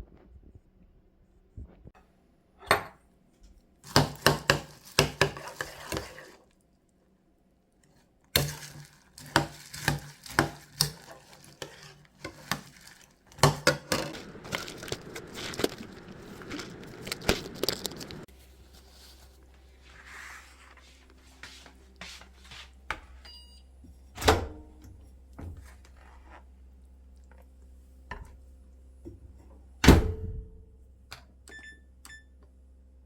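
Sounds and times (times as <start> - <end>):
rustling: 8.5 - 22.8.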